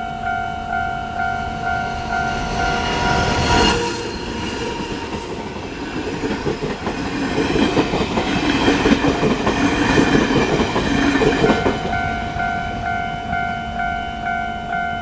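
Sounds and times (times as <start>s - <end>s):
level crossing warning bell: 0.0s - 4.6s, 11.1s - 15.0s
train wheels clacking over rail joints: 4.3s - 12.0s.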